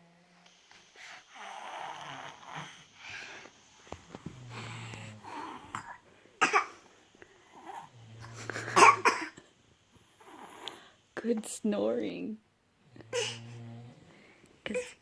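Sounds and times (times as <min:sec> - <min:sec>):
toddler fake-snoring: 0:01.0 - 0:03.3, 0:04.1 - 0:06.0, 0:07.4 - 0:09.0, 0:10.0 - 0:10.9, 0:12.9 - 0:15.0.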